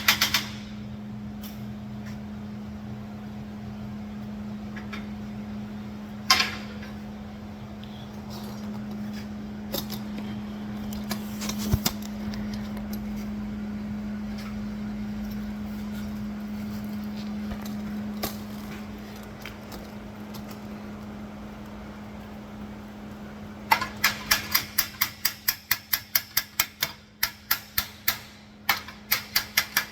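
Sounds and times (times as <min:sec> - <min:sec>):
low motor hum: 0:00.0 - 0:23.9
sharp clicks and knocks: 0:23.7 - 0:29.9.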